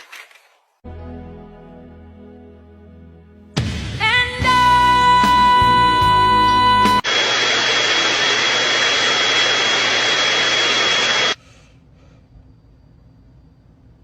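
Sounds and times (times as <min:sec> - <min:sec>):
loud rushing noise with high whine: 0:07.0 - 0:11.4.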